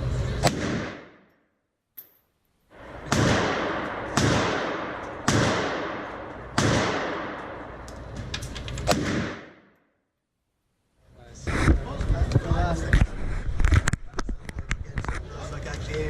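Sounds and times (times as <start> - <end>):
gunshots with echo: 0.4 - 1.2, 2.8 - 7.8, 8.9 - 9.7.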